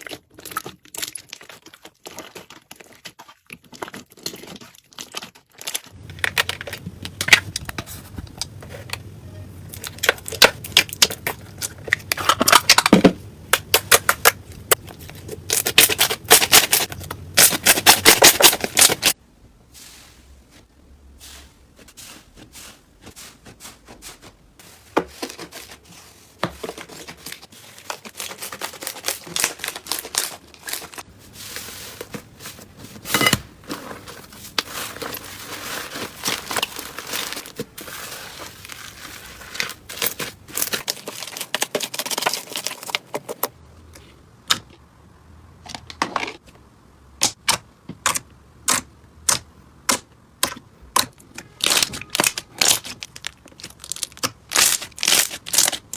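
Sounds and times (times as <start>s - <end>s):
slime crackling and popping: 51.4s - 55.9s.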